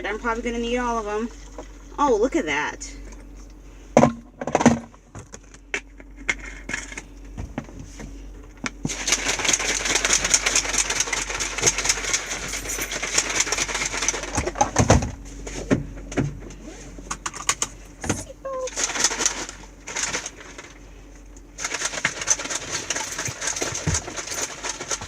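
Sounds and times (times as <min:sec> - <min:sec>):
shaker bottle rattling: 0:21.6 - 0:25.0.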